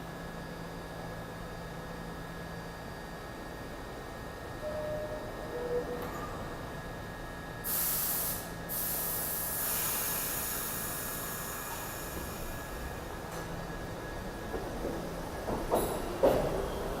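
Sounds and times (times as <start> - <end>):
train air brakes hissing: 7.6 - 12.8.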